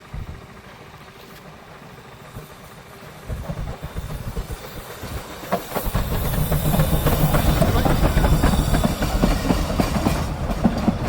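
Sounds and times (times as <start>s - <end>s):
steam train rumbling: 0.0s - 11.0s.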